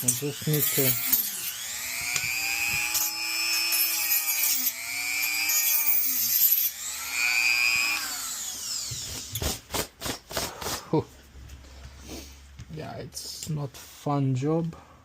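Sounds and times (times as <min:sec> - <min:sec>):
rotary tool cutting plastic: 0:00.0 - 0:10.9.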